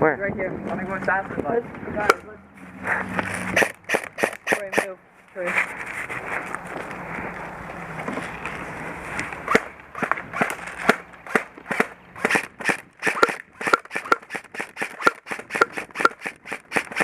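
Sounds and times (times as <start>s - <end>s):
airsoft guns firing pops: 3.6s - 4.9s, 9.5s - 17.0s.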